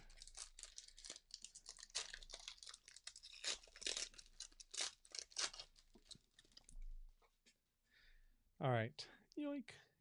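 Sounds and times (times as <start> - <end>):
foil wrapper tearing and crinkling: 0.0 - 6.6.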